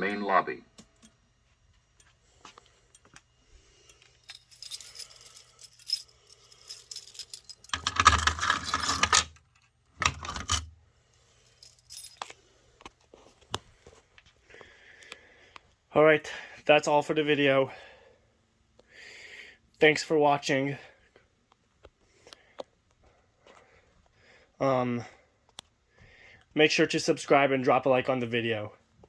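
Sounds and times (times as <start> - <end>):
metallic jingling and rustling: 4.2 - 9.3, 11.3 - 12.4.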